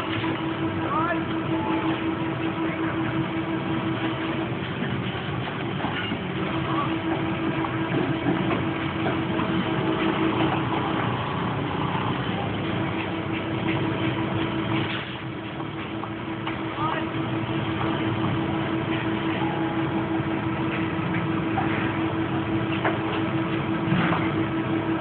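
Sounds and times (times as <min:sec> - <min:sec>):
engine humming: 0:00.0 - 0:25.0.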